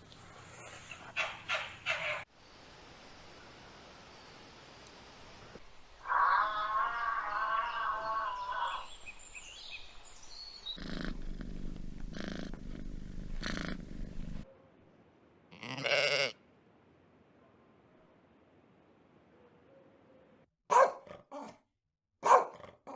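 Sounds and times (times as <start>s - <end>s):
steady low hum: 10.8s - 14.4s
goat or sheep bleating: 15.5s - 16.4s.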